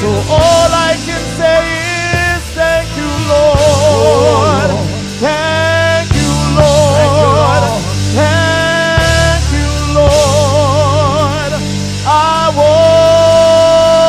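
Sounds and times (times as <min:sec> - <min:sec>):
band accompaniment: 0:00.0 - 0:14.0
person singing gospel: 0:00.0 - 0:14.0
steady low bass line: 0:00.0 - 0:14.0.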